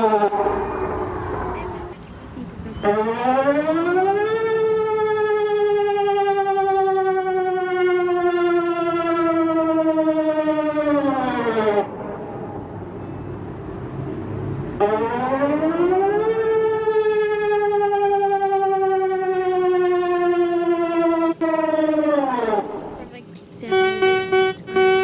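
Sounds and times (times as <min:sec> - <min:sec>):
warning siren wailing: 0:00.0 - 0:02.0, 0:02.7 - 0:25.0.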